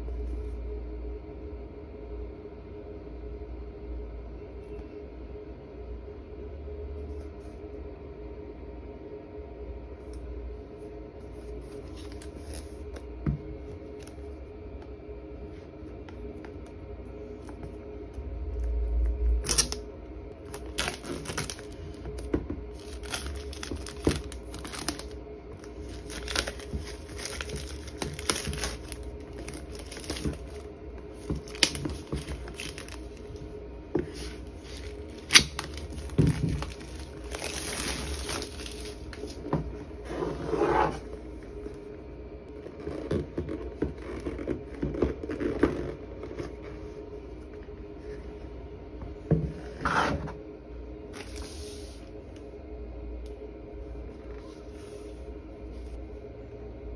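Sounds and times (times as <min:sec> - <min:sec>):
wrapping crinkling and tearing: 0:11.6 - 0:13.1, 0:19.3 - 0:39.5.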